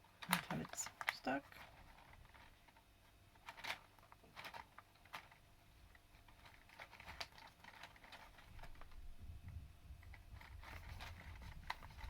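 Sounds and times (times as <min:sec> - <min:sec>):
paper card rustling and tapping: 0:03.4 - 0:09.1, 0:10.0 - 0:12.0.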